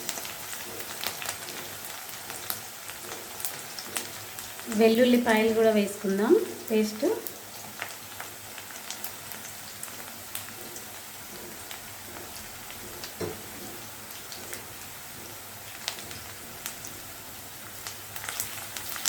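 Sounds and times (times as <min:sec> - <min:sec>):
onions sizzling in hot oil: 0:00.0 - 0:19.0
knock: 0:13.2 - 0:13.4.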